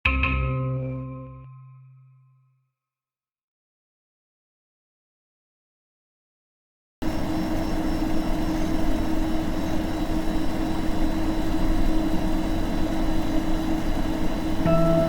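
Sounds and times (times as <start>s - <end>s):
sustained musical tones: 14.7s - 15.0s.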